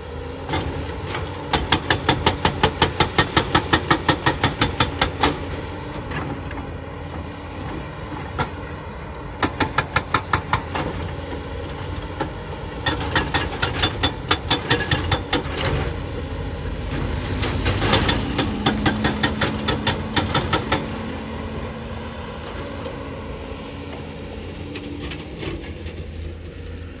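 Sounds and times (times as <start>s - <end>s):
excavator diesel engine running: 13.6s - 25.1s.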